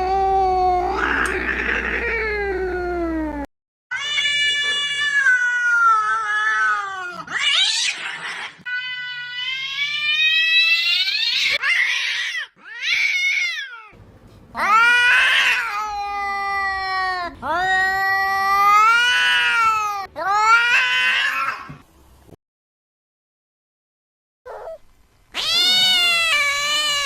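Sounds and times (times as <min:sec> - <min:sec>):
cat yowling: 0:03.9 - 0:14.0, 0:14.6 - 0:21.7, 0:25.4 - 0:27.0.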